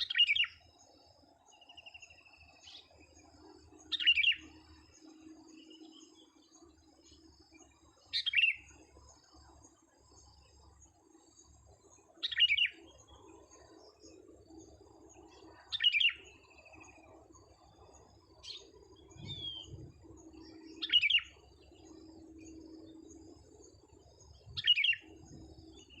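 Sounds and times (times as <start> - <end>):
caged bird calling: 0.0 - 0.6, 3.8 - 4.6, 8.1 - 8.7, 12.2 - 12.9, 15.6 - 16.8, 18.4 - 22.9, 24.5 - 26.0
faint bird chirps: 0.0 - 26.0
low steady hum: 0.0 - 26.0.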